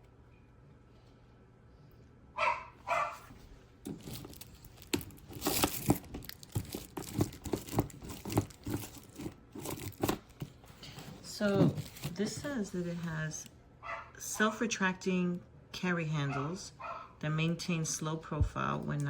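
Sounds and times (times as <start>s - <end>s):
dog barking: 2.4s - 3.3s, 13.8s - 14.2s, 16.3s - 17.2s
clicks knocks and rustling handling: 3.9s - 10.6s.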